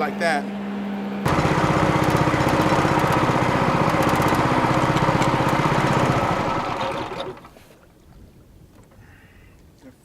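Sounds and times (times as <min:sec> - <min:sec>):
outboard boat motor running: 0:01.3 - 0:07.8.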